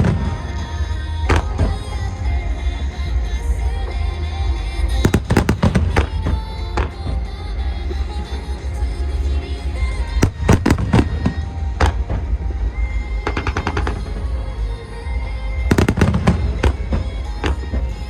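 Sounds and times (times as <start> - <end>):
fireworks bangs: 0.0 - 2.0, 5.0 - 7.2, 10.2 - 12.4, 15.7 - 18.0
low rumble: 0.0 - 18.0
pop song: 0.0 - 18.0
fireworks crackling: 5.0 - 7.2, 10.2 - 12.4, 15.7 - 18.0.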